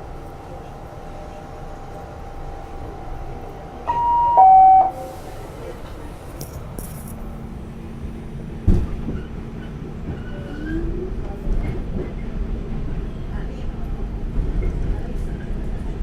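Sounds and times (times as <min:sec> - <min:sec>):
subway car background noise: 0:00.0 - 0:16.0
two-tone subway door chime: 0:03.9 - 0:05.3
thump: 0:08.6 - 0:09.1.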